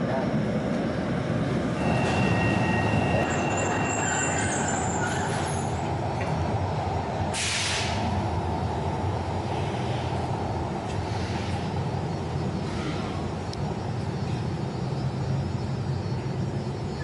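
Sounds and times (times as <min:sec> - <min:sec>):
train rumbling: 0:00.0 - 0:17.0
thin high whines: 0:01.8 - 0:05.8
air hiss: 0:07.3 - 0:08.1.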